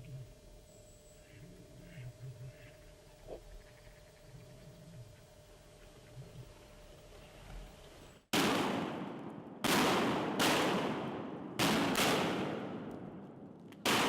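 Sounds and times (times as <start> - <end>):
shotgun blasts: 8.3 - 14.0.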